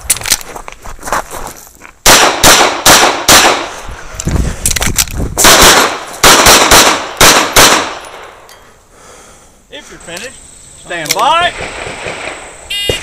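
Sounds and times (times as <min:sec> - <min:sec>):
pistol shots: 0:02.0 - 0:03.7, 0:05.4 - 0:08.3.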